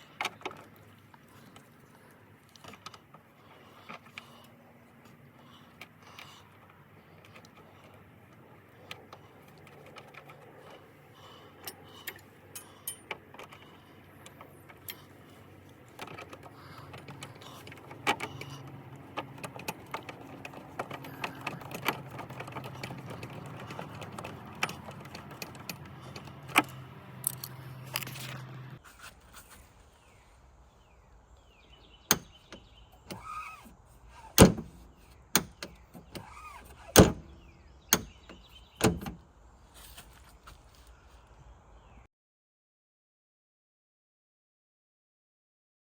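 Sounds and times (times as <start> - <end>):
hood latch clicks and knocks: 16.0 - 28.1, 32.1 - 33.6, 34.2 - 39.2.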